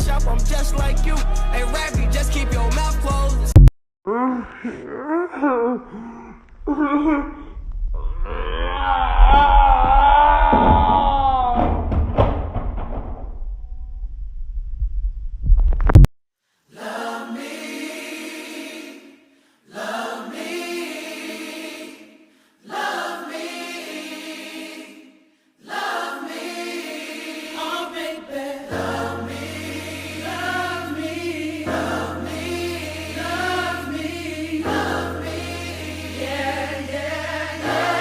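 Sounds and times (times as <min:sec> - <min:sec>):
choir singing: 0:00.0 - 0:03.5, 0:16.7 - 0:38.0
deep bass: 0:00.0 - 0:03.7.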